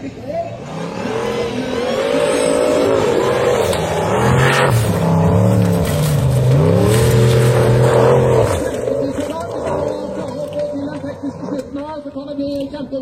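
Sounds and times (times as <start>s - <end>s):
racing car engine revving: 0.0s - 12.1s.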